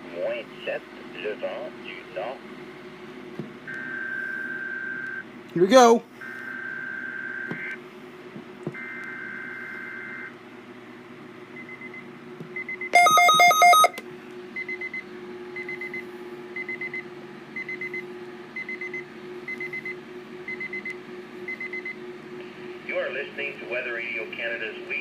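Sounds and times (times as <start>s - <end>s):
muffled weather radio alert beeping: 13.0s - 13.9s.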